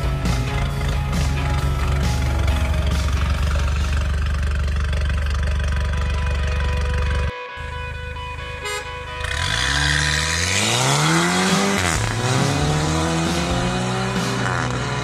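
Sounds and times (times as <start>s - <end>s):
car engine accelerating hard: 9.0s - 15.0s.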